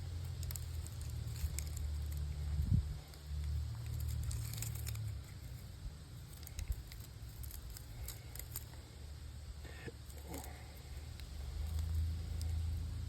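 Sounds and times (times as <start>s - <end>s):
scrap parts clicking: 0.0s - 8.9s.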